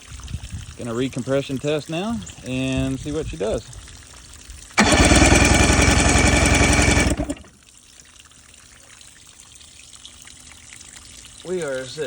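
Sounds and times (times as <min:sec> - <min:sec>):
outboard engine cranking: 0:04.8 - 0:07.5.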